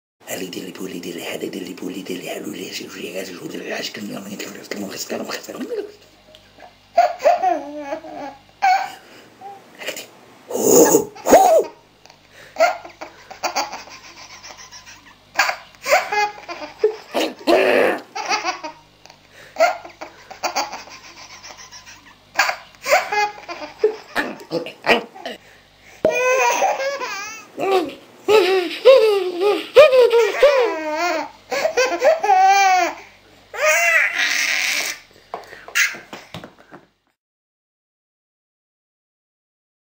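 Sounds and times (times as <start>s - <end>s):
baby laughing: 6.6s - 9.6s, 10.5s - 11.8s, 12.6s - 18.8s, 19.6s - 25.4s, 26.1s - 33.0s, 35.7s - 36.2s
man making silly vocal noises: 10.5s - 11.8s, 17.2s - 18.2s, 27.6s - 30.0s.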